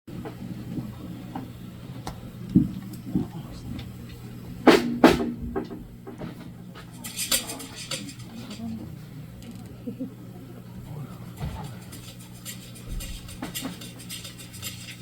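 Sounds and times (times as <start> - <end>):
steady low hum: 0.1 - 15.0
drum hits: 4.6 - 6.4.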